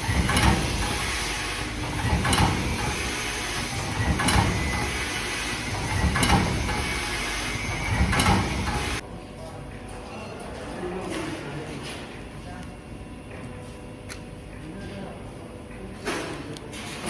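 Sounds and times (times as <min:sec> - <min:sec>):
packing machine running: 0:00.0 - 0:09.0.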